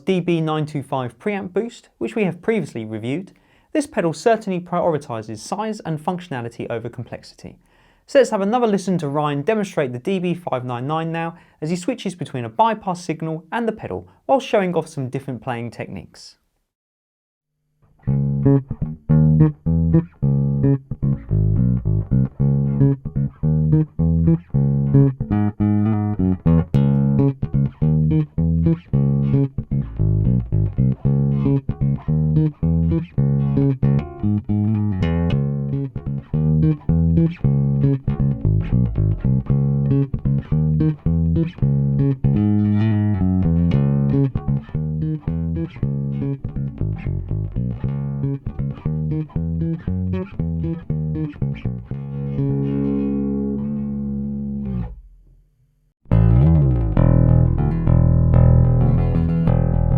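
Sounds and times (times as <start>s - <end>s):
electric bass guitar plucked notes: 17.8s - 55.3s, 56.1s - 59.9s.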